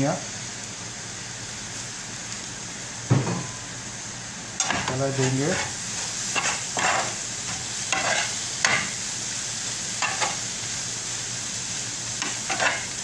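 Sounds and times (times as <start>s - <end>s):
egg sizzling in oiled pan: 0.4s - 13.0s
spatula scraping pan: 4.6s - 9.0s, 12.2s - 13.0s.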